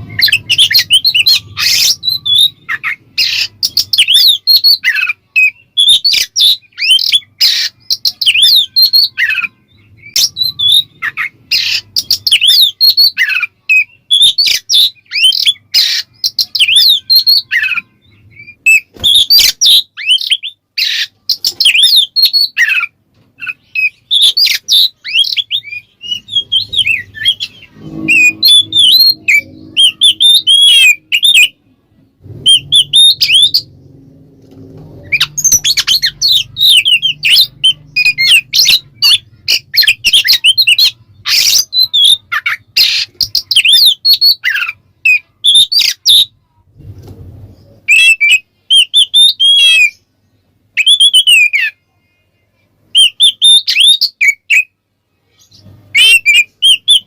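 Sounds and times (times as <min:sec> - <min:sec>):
bird singing whistles and chatter: 0:00.0 - 0:31.6, 0:32.2 - 0:33.7, 0:35.0 - 0:46.3, 0:47.8 - 0:50.0, 0:50.8 - 0:51.8, 0:52.9 - 0:54.8, 0:55.5 - 0:57.0.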